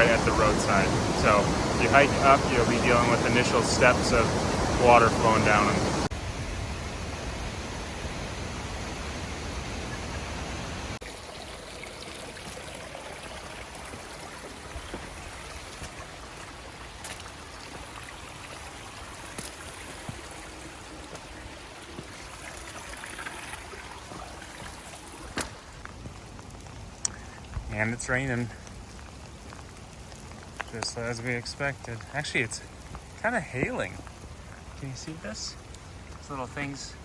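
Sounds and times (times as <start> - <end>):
mountain creek rushing: 0.0 - 37.0
faint ticks: 26.4 - 27.4.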